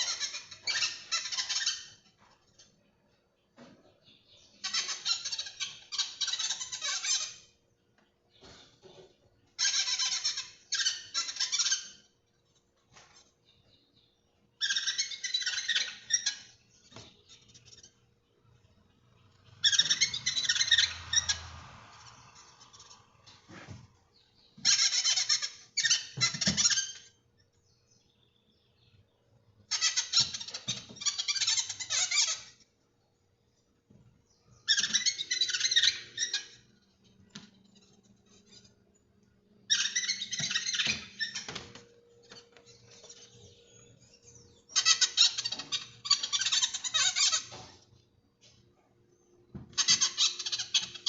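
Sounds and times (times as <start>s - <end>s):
bird chirping in trills: 13.4s - 32.6s, 34.3s - 47.6s.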